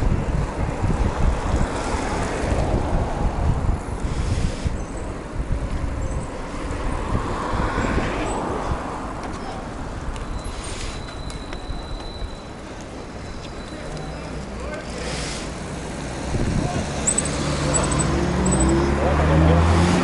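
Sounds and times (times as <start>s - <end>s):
wind buffeting microphone: 0.0s - 10.5s, 16.1s - 18.9s
bicycle rolling noise: 0.0s - 16.0s.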